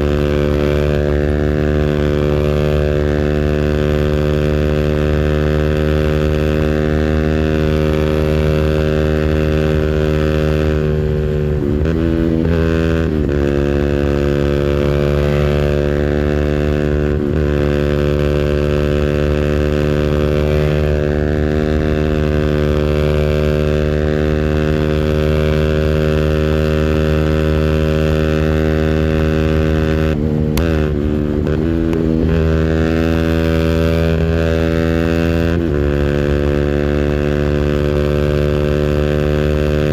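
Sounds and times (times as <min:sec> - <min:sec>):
engine on rev limiter: 0:00.0 - 0:39.9.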